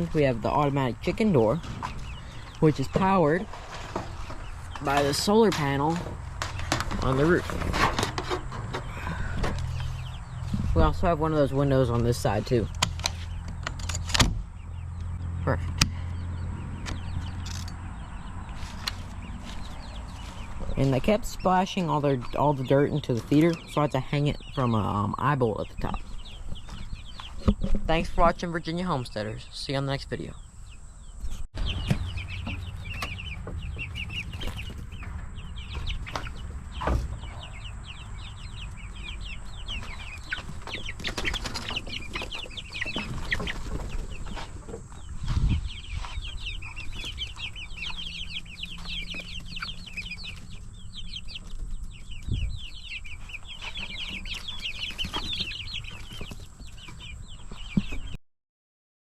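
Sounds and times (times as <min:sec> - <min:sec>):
chickens clucking: 0:00.0 - 0:58.2.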